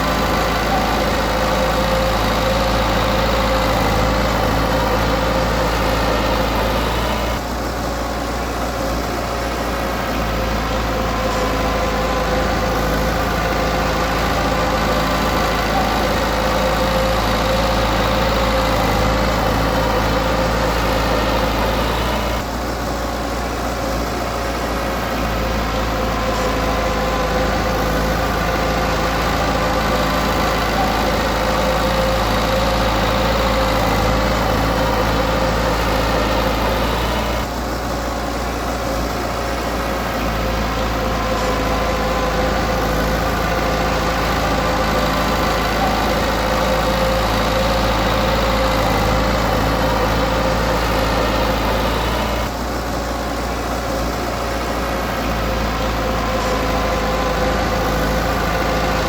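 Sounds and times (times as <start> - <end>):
heavy machine diesel engine running: 0.0 - 59.0.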